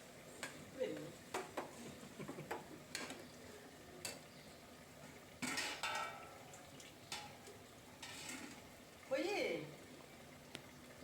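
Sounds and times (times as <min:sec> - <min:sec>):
spoon stirring and scraping a pot: 0:05.4 - 0:06.3, 0:08.0 - 0:08.7.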